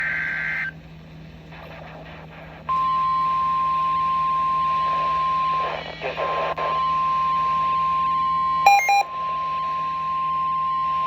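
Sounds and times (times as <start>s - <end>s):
faint radio static: 0.0s - 0.9s, 1.5s - 11.0s
steady warning alarm tone: 2.7s - 11.0s.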